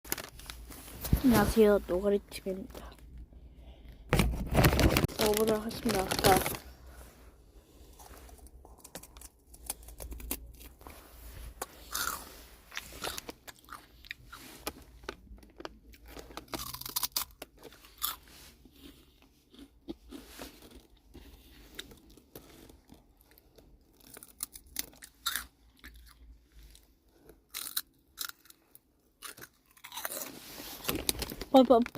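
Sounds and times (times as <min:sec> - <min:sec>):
crunchy chips being chewed: 0:07.9 - 0:10.8, 0:11.8 - 0:31.4.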